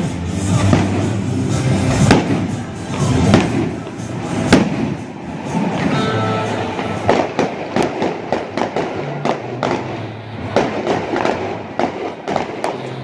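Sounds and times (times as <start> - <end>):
music: 0.0 - 10.0
fireworks bangs and crackles: 0.0 - 13.0.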